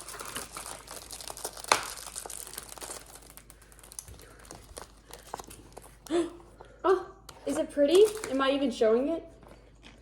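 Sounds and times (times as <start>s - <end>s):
small crackles: 0.0s - 6.2s
plastic piping bag crinkling: 0.0s - 6.3s, 7.5s - 8.7s.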